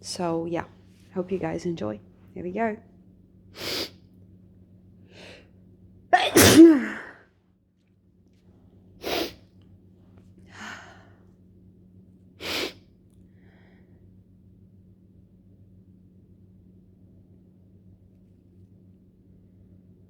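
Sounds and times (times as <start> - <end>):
person sneezing: 3.6 - 3.9, 6.2 - 7.2, 9.0 - 9.4, 12.4 - 12.8
sharp noisy breaths: 3.6 - 3.9, 9.0 - 9.4, 12.4 - 12.8.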